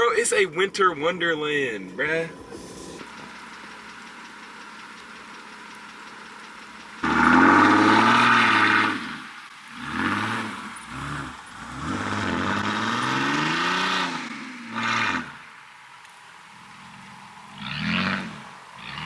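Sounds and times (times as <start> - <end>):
car engine revving hard: 7.0 - 15.6, 16.8 - 19.0.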